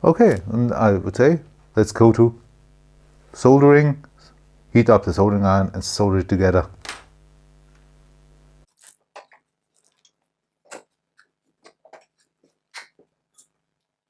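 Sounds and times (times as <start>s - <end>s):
low steady hum: 0.0s - 8.6s.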